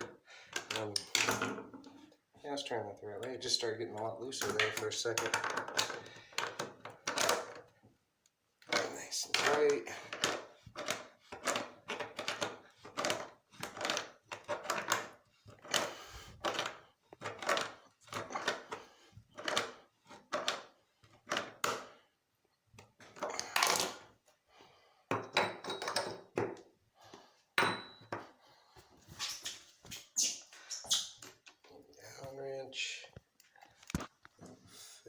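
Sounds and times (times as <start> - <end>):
tools knocking and clattering: 25.1 - 26.7, 27.6 - 28.4.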